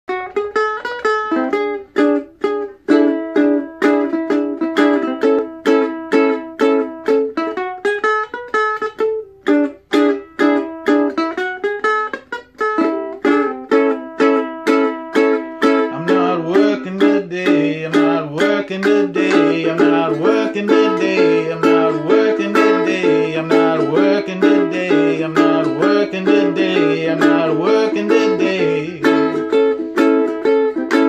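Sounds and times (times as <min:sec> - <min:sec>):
acoustic guitar strumming chords: 0:00.1 - 0:31.0
person singing: 0:15.4 - 0:31.0.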